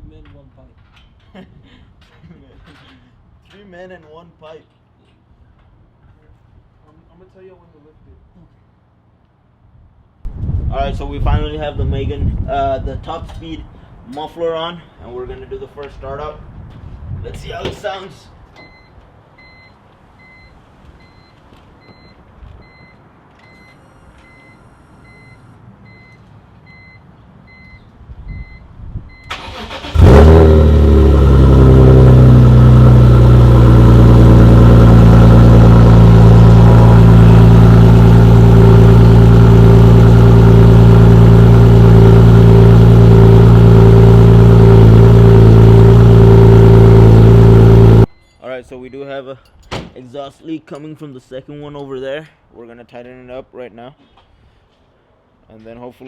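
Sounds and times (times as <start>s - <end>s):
car engine cranking: 29.2s - 48.1s
exhaust leak: 29.3s - 48.1s
car engine idling loud: 30.0s - 48.1s.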